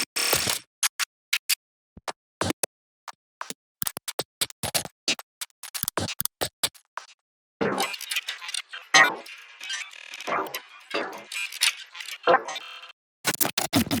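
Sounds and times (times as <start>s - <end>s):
digital glitch clicks and stutters: 7.6s - 14.0s.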